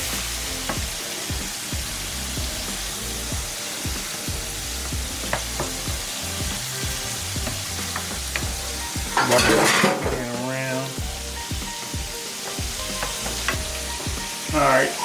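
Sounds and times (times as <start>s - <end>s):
sauce sizzling in a pan: 0.0s - 15.0s
utensil scraping a pan: 7.7s - 10.4s.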